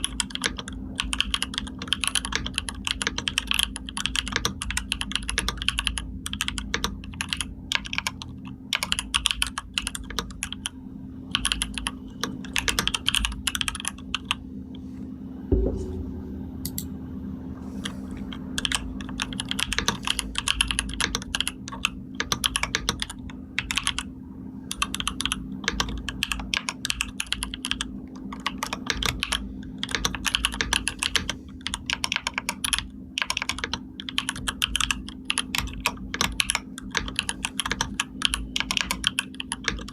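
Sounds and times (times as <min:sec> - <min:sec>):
steady low hum: 0:00.0 - 0:39.9
single thump: 0:15.5 - 0:16.9.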